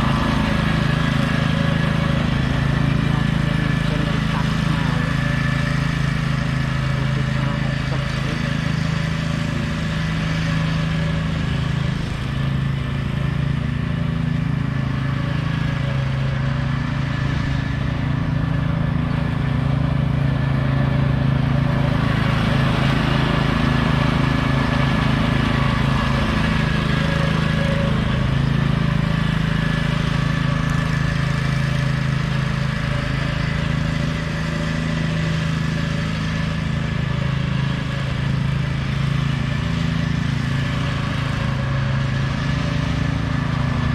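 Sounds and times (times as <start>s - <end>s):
riding lawn mower engine running: 0.0s - 43.9s.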